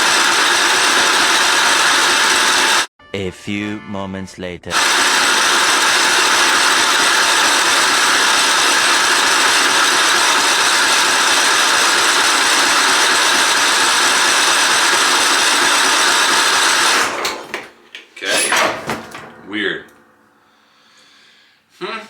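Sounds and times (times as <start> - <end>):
starter motor cranking engine: 0.0 - 2.9, 4.7 - 19.4.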